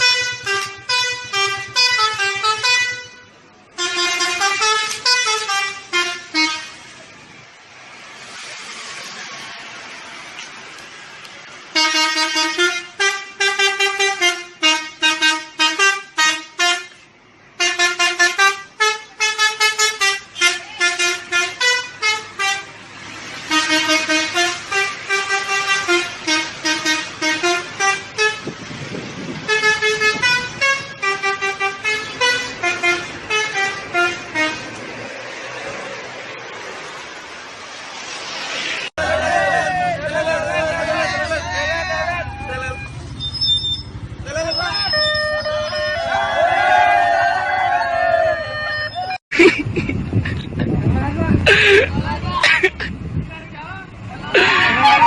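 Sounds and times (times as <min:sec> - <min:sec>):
multi-tone air horn tune: 0:00.0 - 0:06.9, 0:11.8 - 0:22.7, 0:23.5 - 0:28.6, 0:29.5 - 0:34.8, 0:44.6 - 0:46.2.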